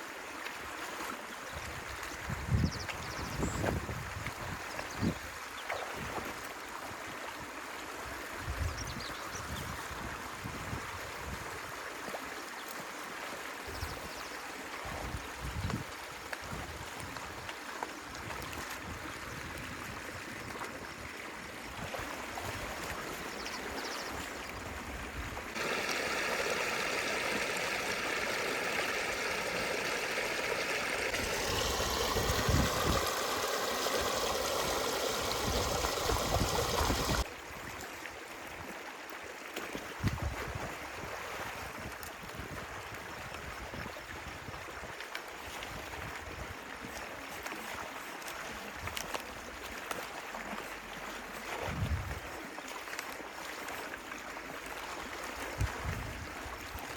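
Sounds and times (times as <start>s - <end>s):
stream water gurgling: 0.0s - 56.9s
water rushing: 25.4s - 37.3s.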